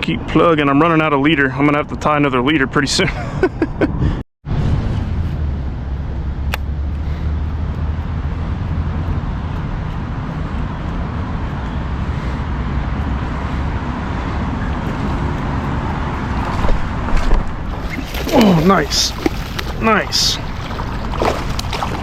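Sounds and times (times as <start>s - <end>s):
low outdoor rumble: 4.5s - 22.0s.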